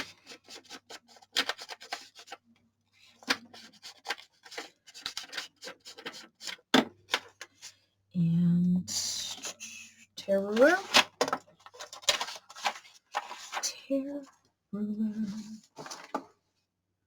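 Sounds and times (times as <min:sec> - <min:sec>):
paper rustling: 0:00.0 - 0:02.4, 0:03.0 - 0:07.8, 0:10.5 - 0:13.7, 0:15.3 - 0:16.2.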